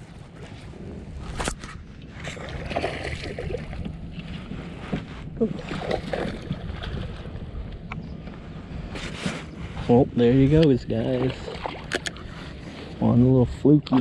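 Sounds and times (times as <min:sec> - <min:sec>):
water splashing against kayak: 0:01.2 - 0:07.8, 0:10.5 - 0:13.0.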